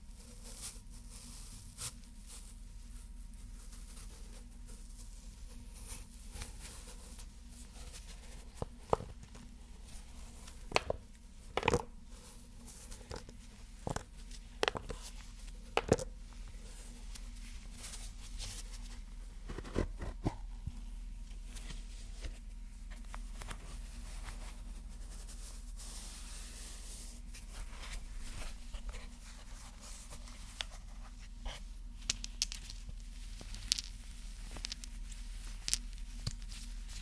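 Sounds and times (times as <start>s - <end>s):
faint steady hiss: 0.0s - 37.0s
objects tapping and clicking: 10.7s - 11.9s, 13.0s - 15.0s, 15.8s - 16.1s, 32.0s - 37.0s.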